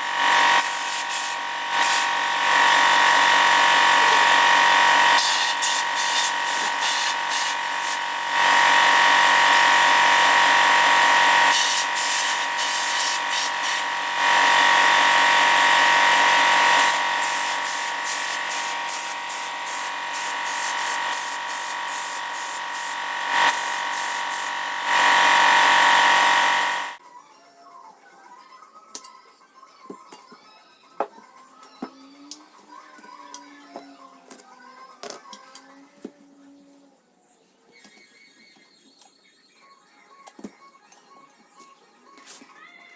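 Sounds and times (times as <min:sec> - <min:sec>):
power tool whining on metal: 0:00.0 - 0:27.0.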